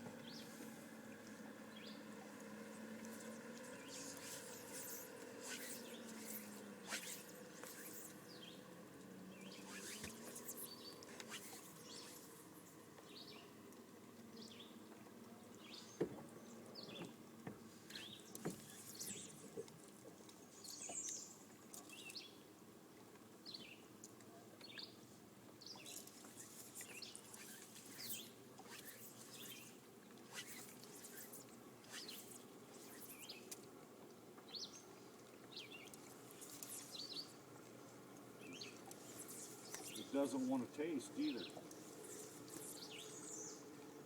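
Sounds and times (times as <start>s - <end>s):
birds chirping: 0.2s - 8.6s, 38.4s - 43.7s.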